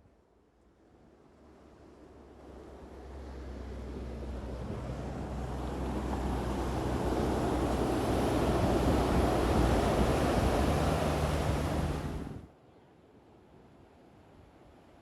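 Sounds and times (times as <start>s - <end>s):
rushing fan noise: 6.6s - 12.5s.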